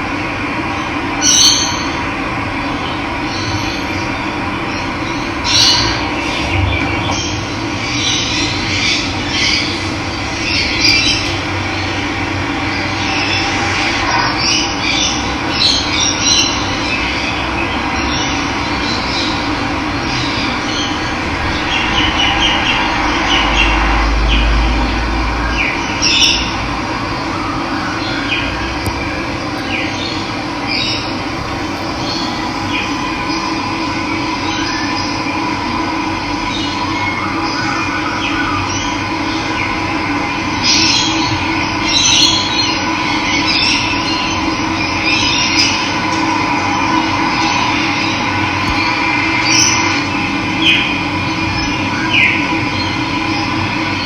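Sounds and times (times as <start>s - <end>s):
birds chirping: 28.0s - 35.3s.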